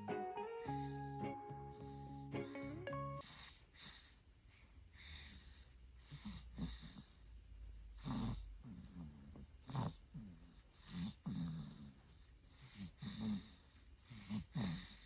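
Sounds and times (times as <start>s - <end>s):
guitar music: 0.0s - 3.2s
baby breathing and snoring: 7.9s - 15.0s.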